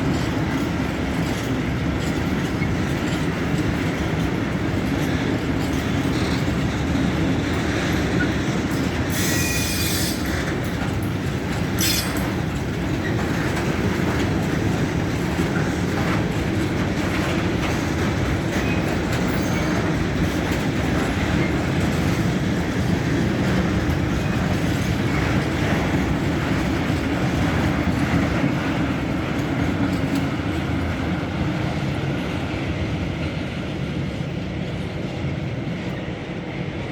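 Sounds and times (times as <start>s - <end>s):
train wheels clattering on rails: 0.0s - 36.9s
high-pitched wheel squeal: 9.1s - 10.3s, 11.8s - 12.2s.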